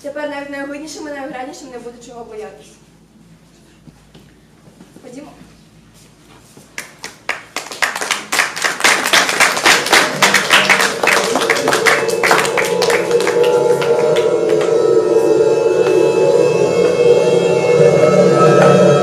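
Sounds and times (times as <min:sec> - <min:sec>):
sustained low chord: 0:09.3 - 0:19.0.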